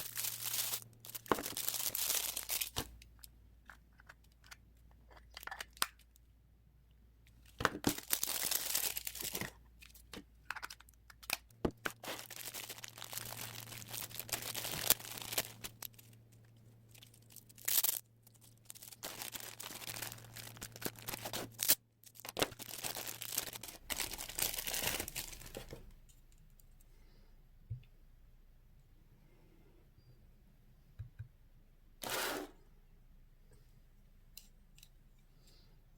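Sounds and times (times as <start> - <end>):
packaging crinkling and tearing: 0.0 - 2.9, 7.7 - 16.2, 16.9 - 25.8.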